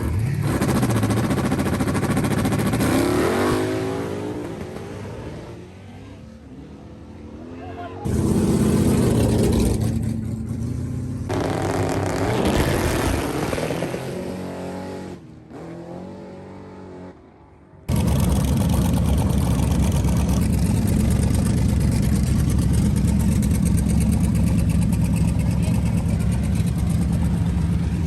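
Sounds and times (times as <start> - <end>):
engine running with rough rumble: 0.0 - 3.6, 8.1 - 13.5, 17.9 - 28.0
drag-race car engines revving: 0.0 - 17.2, 17.9 - 28.0.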